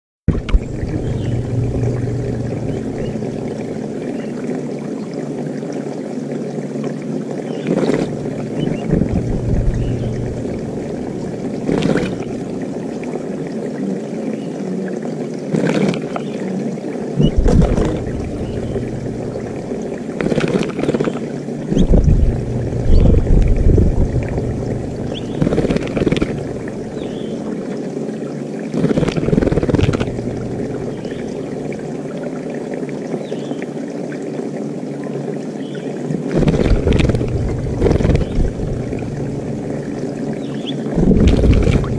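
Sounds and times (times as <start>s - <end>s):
bird splashing in water: 7.5s - 13.1s, 15.5s - 16.3s, 17.2s - 27.4s, 28.7s - 31.8s, 36.3s - 41.9s.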